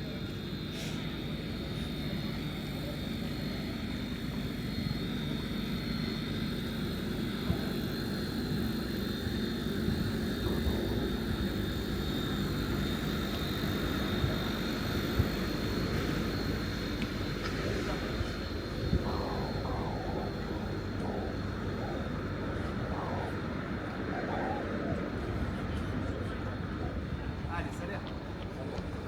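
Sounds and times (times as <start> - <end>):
low engine drone: 0.0 - 27.2.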